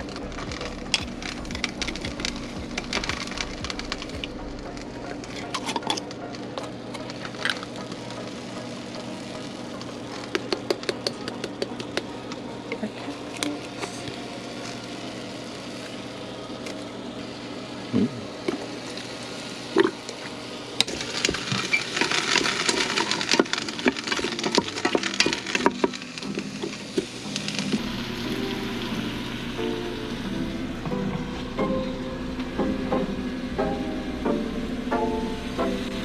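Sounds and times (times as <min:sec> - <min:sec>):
sharp clicks and crackles: 0:00.0 - 0:12.4
vegetables sizzling: 0:00.0 - 0:36.0.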